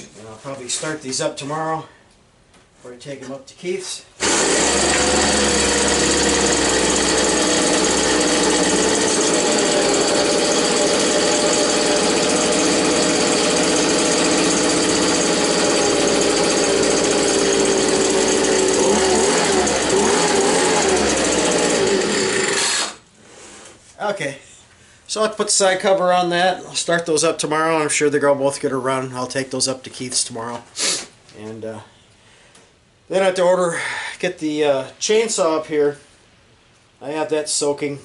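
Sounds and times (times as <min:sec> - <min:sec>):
two-stroke engine running fast: 0:04.2 - 0:22.6.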